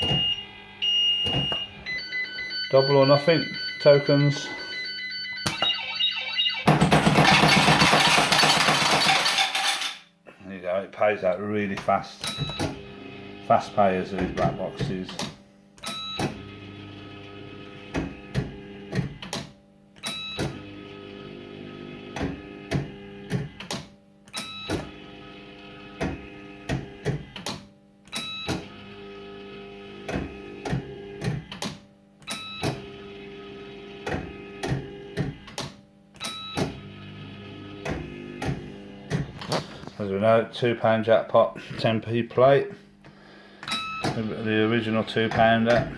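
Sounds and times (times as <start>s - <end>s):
electronic beeping tones: 0.0s - 7.0s.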